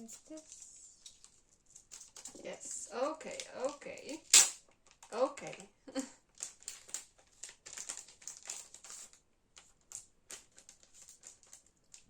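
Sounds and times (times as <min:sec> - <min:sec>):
paper crinkling and rustling: 0:00.1 - 0:02.5, 0:06.3 - 0:12.0.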